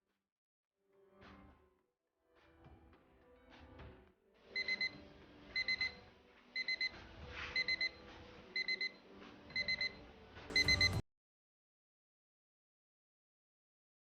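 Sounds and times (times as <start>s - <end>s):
faint background music: 0.9s - 11.0s
alarm clock beeping: 4.6s - 5.0s, 5.6s - 6.0s, 6.6s - 6.9s, 7.6s - 8.0s, 8.6s - 11.0s.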